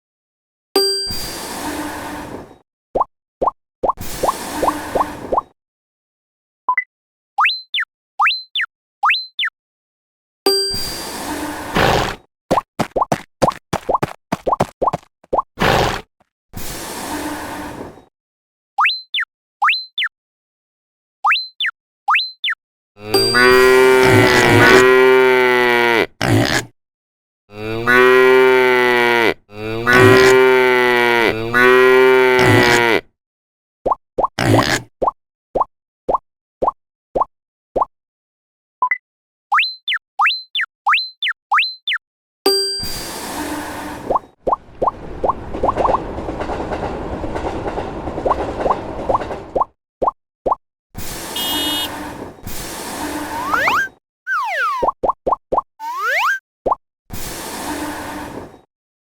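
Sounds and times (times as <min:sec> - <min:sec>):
cartoon plops: 0:06.7 - 0:09.5, 0:18.8 - 0:20.1, 0:21.2 - 0:23.6, 0:33.9 - 0:37.9, 0:38.8 - 0:42.0, 0:53.4 - 0:56.8
cartoon train running noise: 0:23.0 - 0:25.2, 0:42.9 - 0:49.7, 0:51.0 - 0:54.8
cow mooing: 0:23.0 - 0:26.1, 0:27.5 - 0:33.1
hiss bursts: 0:51.0 - 0:53.6, 0:57.2 - 0:58.5.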